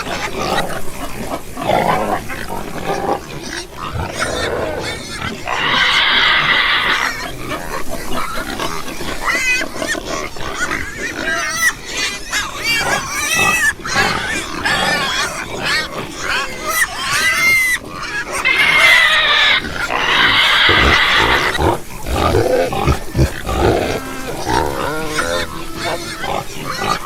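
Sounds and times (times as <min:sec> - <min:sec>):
pigs grunting: 0:00.0 - 0:27.0
pigs squealing: 0:00.0 - 0:27.0.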